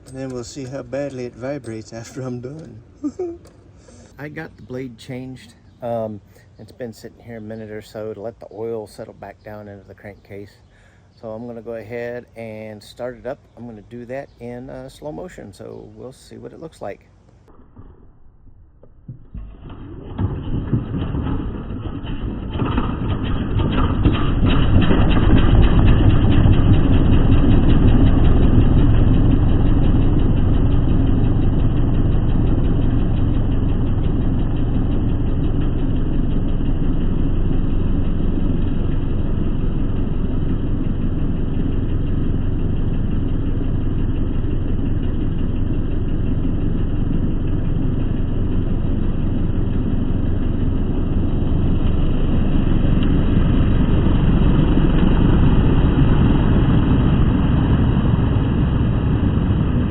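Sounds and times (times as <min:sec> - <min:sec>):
lawnmower engine running: 0:19.1 - 0:59.9.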